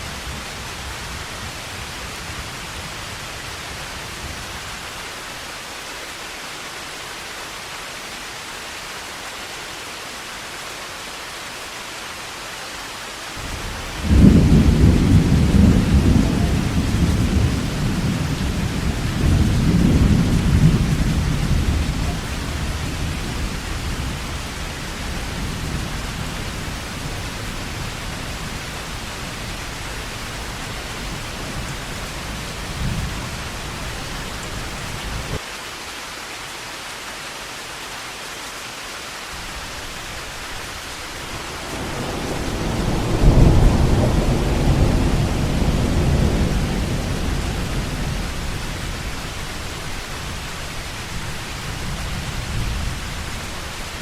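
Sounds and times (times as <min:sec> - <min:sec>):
heavy rain: 0:00.0 - 0:54.0
thunder rumbling: 0:13.4 - 0:35.4, 0:40.0 - 0:54.0.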